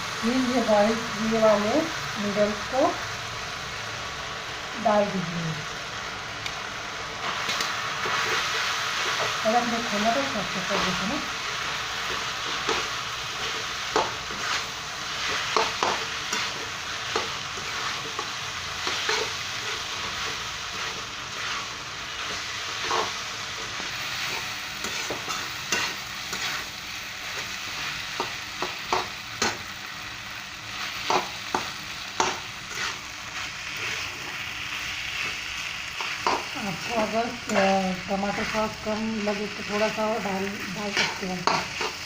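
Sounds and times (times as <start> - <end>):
food sizzling in a hot pan: 0.0 - 42.0
spatula scraping and knocking pan: 12.1 - 26.7, 30.9 - 34.3, 36.0 - 38.8, 40.8 - 42.0.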